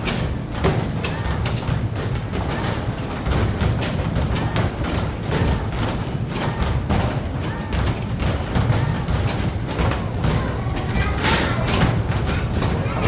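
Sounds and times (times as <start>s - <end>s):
basketballs thudding on backboard: 0.0s - 13.0s.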